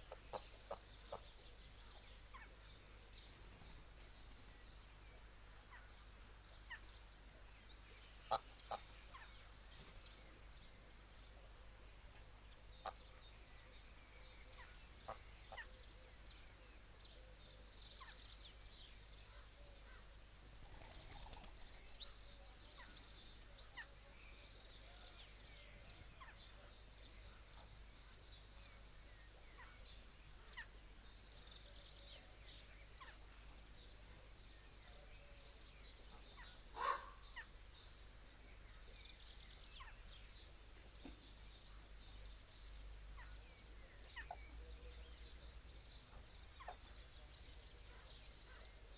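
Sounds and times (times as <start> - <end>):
faint bird calls: 0.0 - 3.0, 3.6 - 7.0, 8.1 - 37.9, 38.5 - 48.9
fowl call: 36.8 - 37.2.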